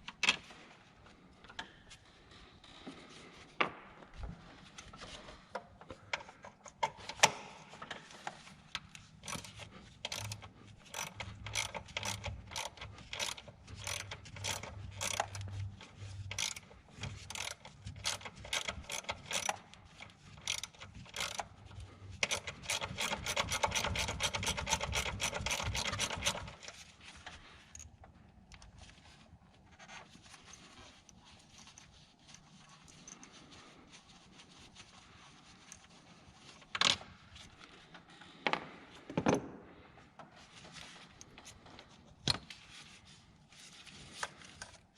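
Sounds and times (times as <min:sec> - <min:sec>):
hand ratchet clicking: 0:09.2 - 0:26.8.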